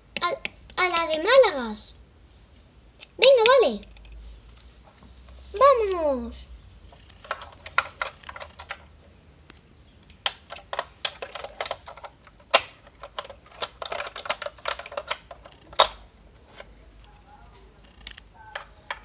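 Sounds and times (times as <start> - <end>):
plastic toy parts clicking: 0.1 - 1.3, 6.9 - 8.9, 10.0 - 16.0.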